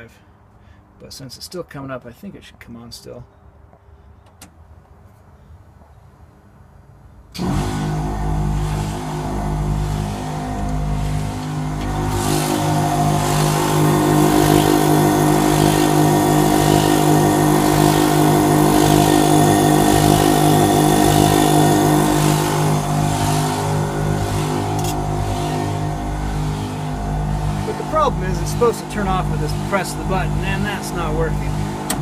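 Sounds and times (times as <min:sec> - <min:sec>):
air compressors humming and hissing: 0:07.4 - 0:32.0.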